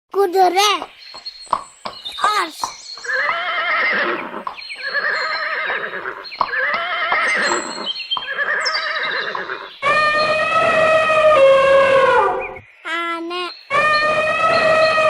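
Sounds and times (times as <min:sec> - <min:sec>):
horse whinnying: 0:03.0 - 0:12.6, 0:13.7 - 0:15.0.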